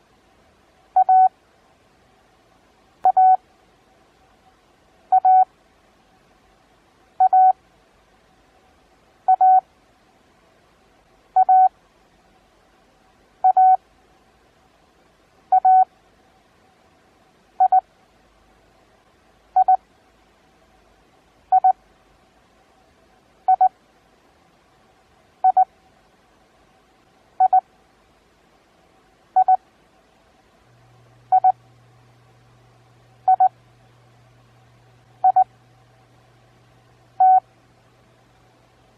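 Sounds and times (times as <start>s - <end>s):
morse code tone: 1.0s - 1.3s, 3.1s - 3.4s, 5.1s - 5.5s, 7.2s - 7.6s, 9.3s - 9.6s, 11.4s - 11.7s, 13.4s - 13.8s, 15.5s - 15.9s, 17.6s - 17.8s, 21.5s - 21.8s, 23.5s - 23.7s, 25.4s - 25.6s, 27.4s - 27.6s, 29.4s - 29.6s, 31.3s - 31.6s, 33.3s - 33.5s, 35.2s - 35.5s, 37.2s - 37.4s.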